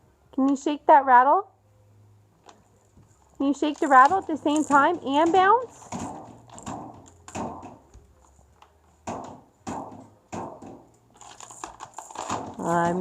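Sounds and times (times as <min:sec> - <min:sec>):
baby bouncer thumping: 0:03.8 - 0:08.1, 0:09.0 - 0:10.9, 0:11.7 - 0:13.0.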